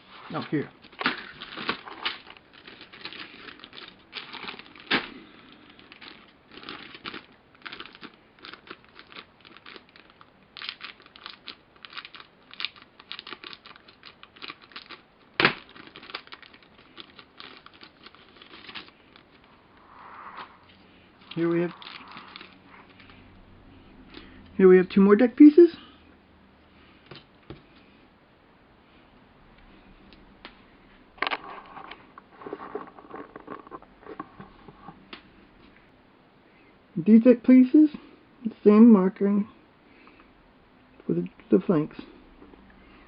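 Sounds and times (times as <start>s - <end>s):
plastic bag crinkling: 0.3s - 19.6s, 21.2s - 23.2s, 31.2s - 35.0s.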